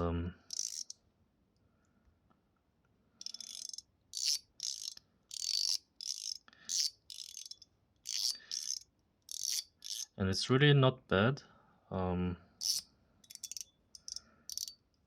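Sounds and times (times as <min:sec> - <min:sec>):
metal fidget slider clicking: 0:00.5 - 0:01.0, 0:03.2 - 0:10.1, 0:12.6 - 0:14.8.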